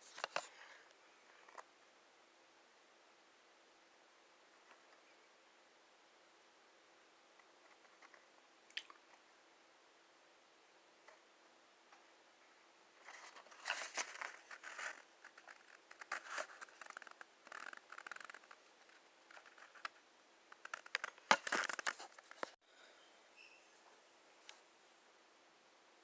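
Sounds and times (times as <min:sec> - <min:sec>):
packaging crinkling and tearing: 0:20.6 - 0:22.5.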